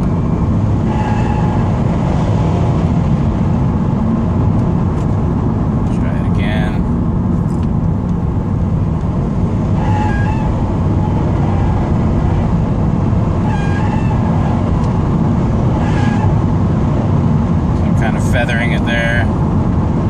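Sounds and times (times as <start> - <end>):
car engine accelerating: 0.0 - 20.0
road noise: 0.0 - 20.0
high-pitched squeal: 0.2 - 1.8, 9.8 - 12.3, 13.4 - 14.6.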